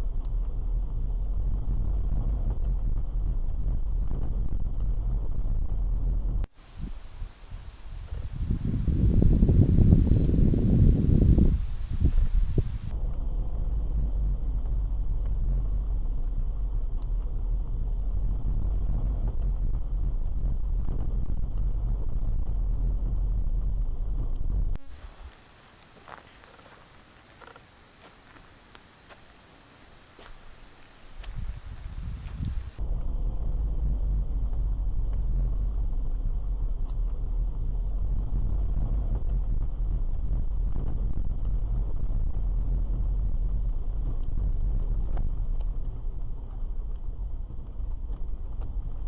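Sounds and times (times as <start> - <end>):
car cabin engine and tyre noise: 24.8 - 32.8
faint ticks: 24.8 - 32.8.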